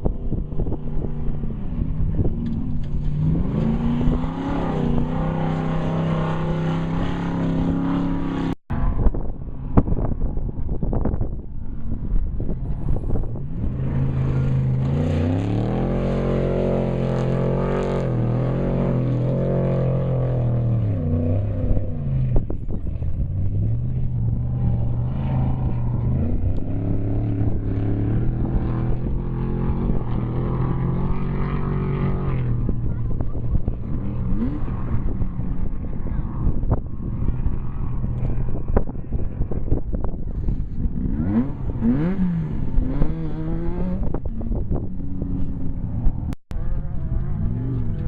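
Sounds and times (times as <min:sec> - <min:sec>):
engine revving hard: 0:41.0 - 0:44.2.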